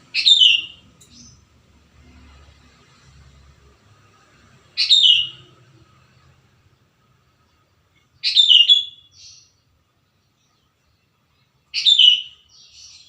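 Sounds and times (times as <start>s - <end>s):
bulbul whistled song: 0.1s - 0.8s, 4.8s - 5.5s, 8.2s - 9.4s, 11.8s - 13.0s.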